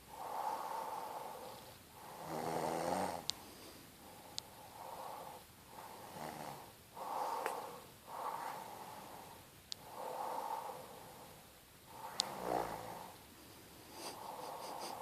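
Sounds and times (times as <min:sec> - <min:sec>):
woman snoring lightly: 0:11.9 - 0:13.2.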